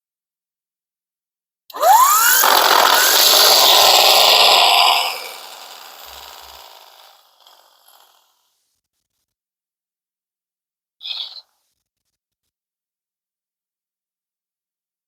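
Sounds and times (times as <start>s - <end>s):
electric impact wrench whining: 1.7s - 8.3s.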